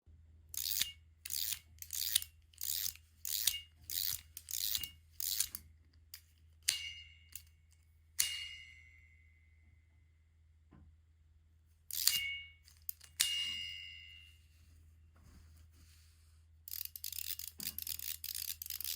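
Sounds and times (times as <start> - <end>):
fidget toy rasping strokes: 0.6 - 5.6, 11.9 - 13.2, 16.7 - 18.9
small bell ding: 13.2 - 14.6.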